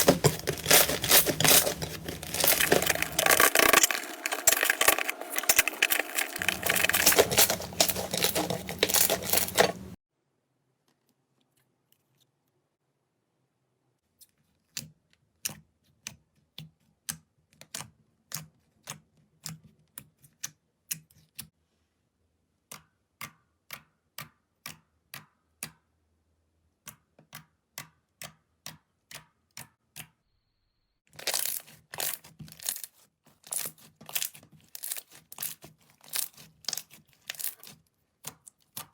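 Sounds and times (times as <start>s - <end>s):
slime crackling and crunching: 0.0s - 10.0s, 31.2s - 37.8s.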